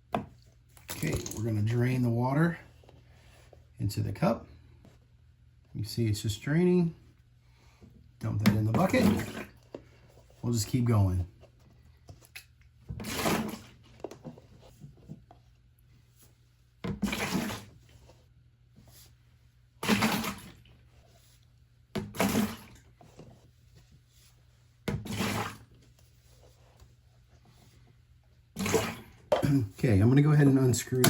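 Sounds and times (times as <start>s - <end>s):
water splashing into bucket: 0.8s - 1.8s, 8.3s - 9.6s, 12.3s - 14.0s, 16.9s - 17.9s, 19.8s - 20.8s, 22.0s - 23.0s, 24.9s - 25.8s, 28.5s - 29.8s.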